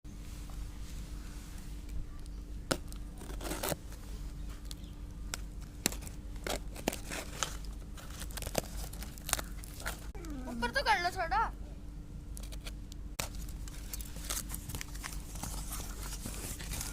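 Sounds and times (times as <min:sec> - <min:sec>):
sharp clicks and rustles: 0:01.8 - 0:10.2, 0:12.3 - 0:16.9
packaging crinkling and tearing: 0:02.7 - 0:03.9, 0:04.6 - 0:10.2, 0:12.3 - 0:16.9.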